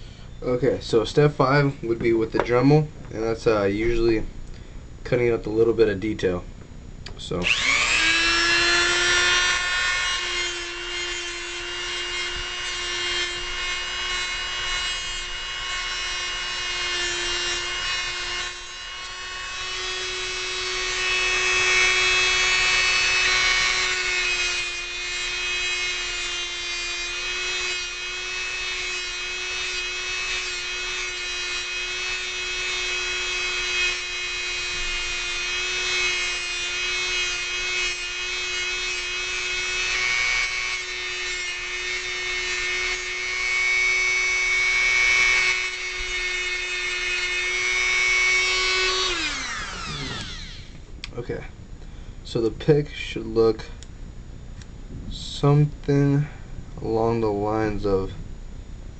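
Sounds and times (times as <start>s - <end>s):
rotary tool grinding steel: 7.4s - 50.8s.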